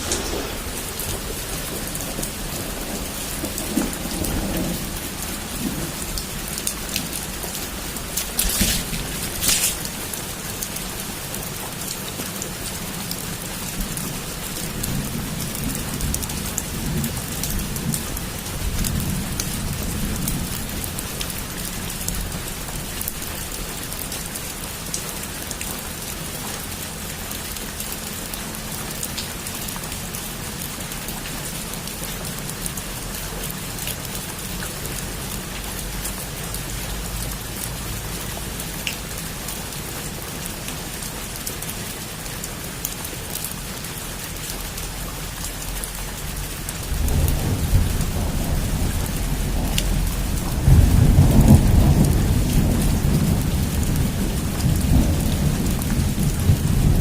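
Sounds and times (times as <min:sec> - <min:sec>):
low thunder rumble: 0:00.0 - 0:10.4, 0:46.8 - 0:57.0
heavy rain on a roof: 0:00.0 - 0:57.0.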